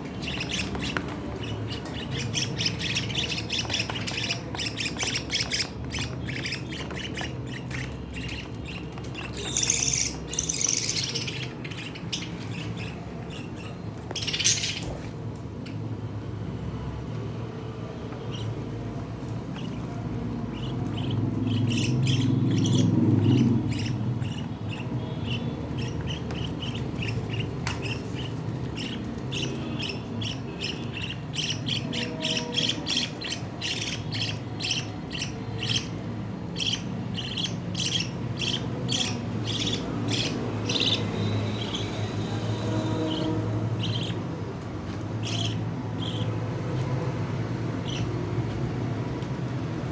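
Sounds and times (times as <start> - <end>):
lovebirds chirping and squawking: 0.0 - 15.9, 18.1 - 48.8.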